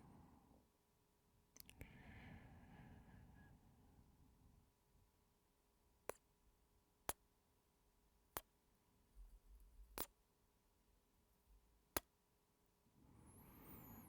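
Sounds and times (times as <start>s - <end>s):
soft breathing: 1.7s - 4.6s, 13.0s - 14.0s.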